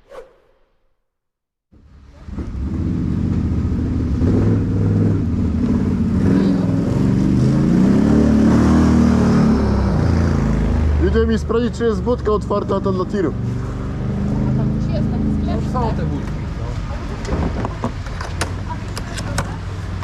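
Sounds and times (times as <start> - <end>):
atv engine running: 2.2 - 11.1.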